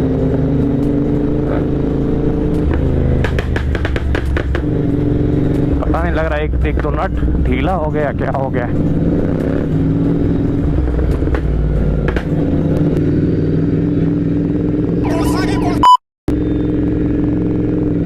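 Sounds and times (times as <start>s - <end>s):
motorcycle engine running: 0.0s - 15.1s, 16.3s - 18.0s
brief high-pitched noise: 15.0s - 16.0s.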